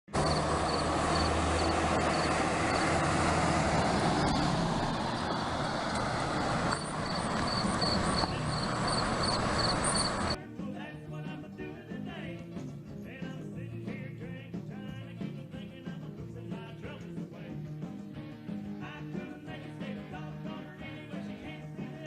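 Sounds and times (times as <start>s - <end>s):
engine running: 0.1s - 10.4s
short high chirps: 6.7s - 10.4s.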